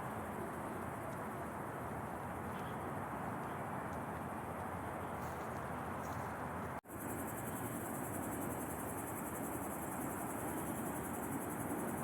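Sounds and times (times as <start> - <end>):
constant rushing hiss: 0.0 - 12.0
high insect trill: 6.9 - 12.0.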